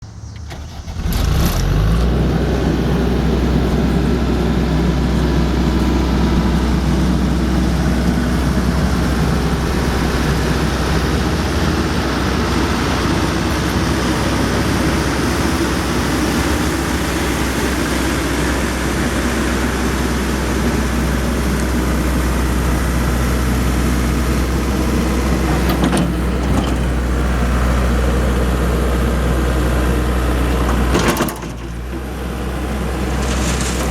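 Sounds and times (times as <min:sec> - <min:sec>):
diesel engine running: 0:00.0 - 0:33.9.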